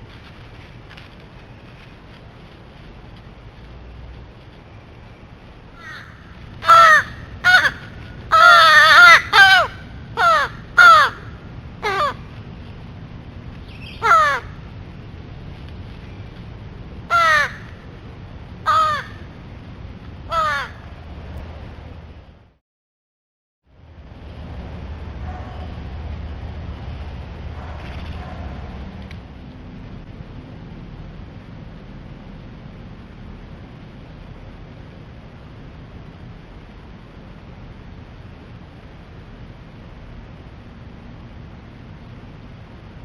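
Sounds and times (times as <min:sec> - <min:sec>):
crows cawing: 0:05.8 - 0:12.2, 0:14.0 - 0:14.6, 0:17.1 - 0:17.8, 0:18.7 - 0:19.3, 0:20.3 - 0:20.9.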